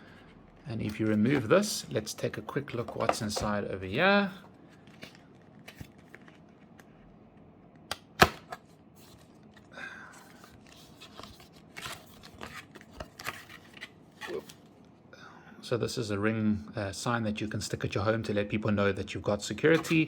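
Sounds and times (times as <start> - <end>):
paper and card rustling: 9.0 - 14.7, 19.5 - 20.0.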